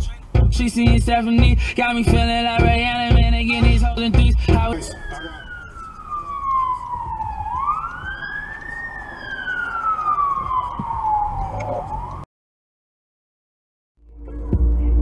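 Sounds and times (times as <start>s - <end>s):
low road noise: 0.0s - 12.3s, 14.0s - 15.0s
siren wailing: 4.6s - 12.2s.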